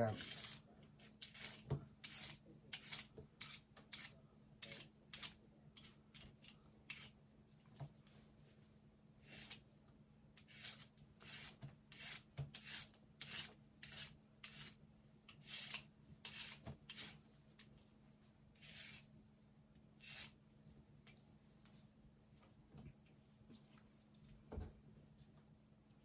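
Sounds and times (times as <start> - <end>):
peeler rasping radish skin: 0.1 - 6.2, 6.9 - 7.1, 10.4 - 17.2, 18.6 - 19.0, 20.0 - 20.4.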